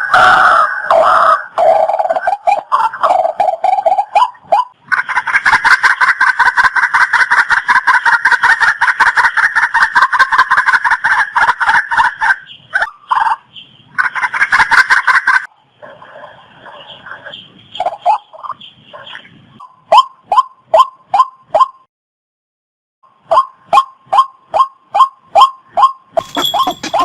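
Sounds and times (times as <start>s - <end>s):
bird harsh repeated calls: 23.2s - 27.0s.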